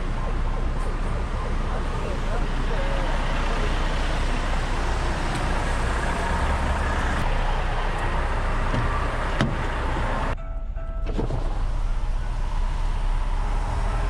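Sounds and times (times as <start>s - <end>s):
traffic passing: 0.0s - 10.4s, 11.2s - 14.0s
low engine rumble: 0.0s - 14.0s.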